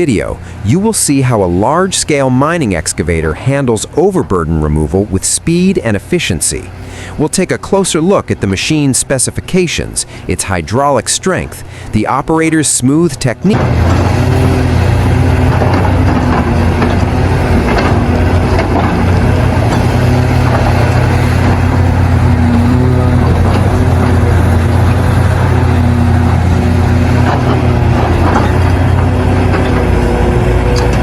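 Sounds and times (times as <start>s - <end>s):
excavator diesel engine running: 0.0s - 31.0s
hydraulic whine: 13.4s - 31.0s.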